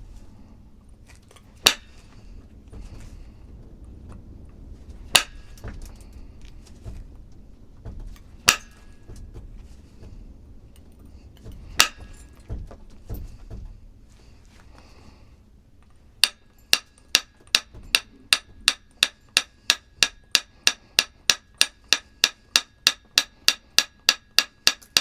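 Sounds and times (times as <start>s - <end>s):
light knocks and taps: 2.0s - 14.9s
sharp glassy stone strikes: 8.4s - 9.0s, 11.4s - 12.3s.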